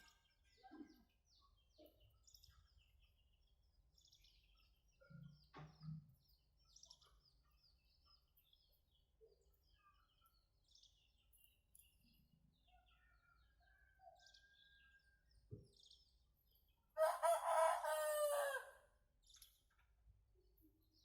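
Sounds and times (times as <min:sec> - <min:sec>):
faint bird chirps: 0:00.0 - 0:17.4
rooster crowing: 0:17.0 - 0:18.8.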